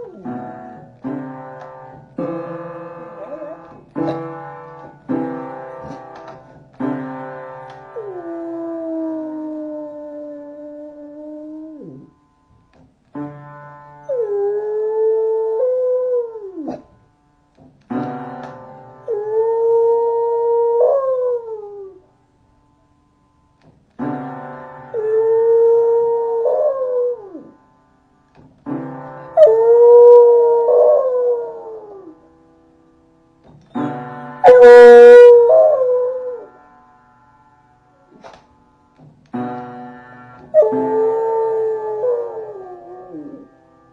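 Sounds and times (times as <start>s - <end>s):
puppy howling: 3.2s - 3.8s, 8.0s - 12.1s, 25.0s - 27.5s, 34.4s - 36.5s, 40.6s - 43.5s.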